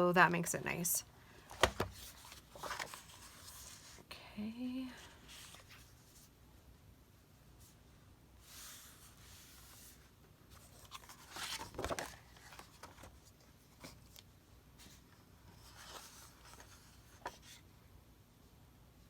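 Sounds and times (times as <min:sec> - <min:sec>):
paper rustling and crinkling: 0:01.5 - 0:04.1, 0:05.0 - 0:06.3, 0:08.4 - 0:17.6.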